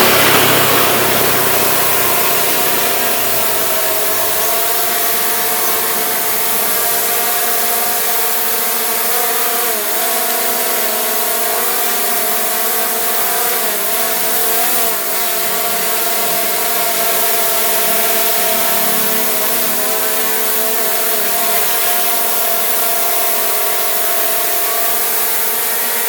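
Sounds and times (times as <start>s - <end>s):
drone propellers whining: 0.0s - 7.7s, 17.2s - 20.7s.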